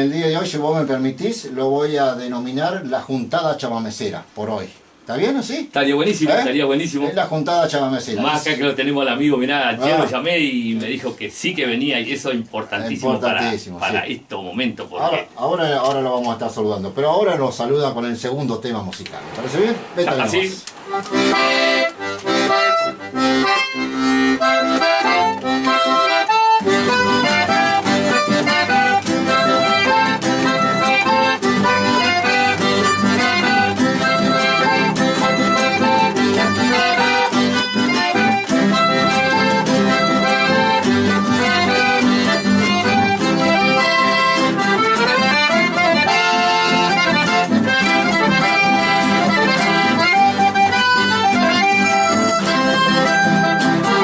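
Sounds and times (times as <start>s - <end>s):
accordion playing folk music: 8.0s - 14.1s, 19.2s - 54.0s
bass line: 21.1s - 54.0s.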